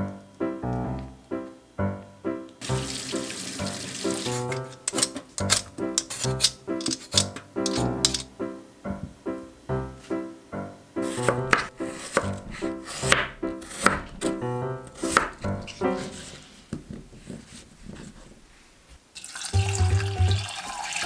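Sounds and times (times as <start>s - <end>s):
light background music: 0.0s - 16.3s, 19.6s - 21.0s
running water: 2.6s - 5.7s, 19.2s - 21.0s
knife chopping on cutting board: 4.1s - 8.2s, 11.0s - 16.3s.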